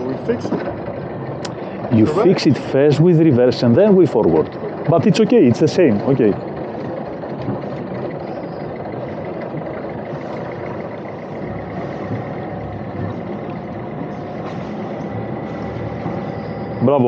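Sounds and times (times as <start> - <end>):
boat engine running: 0.0 - 17.0.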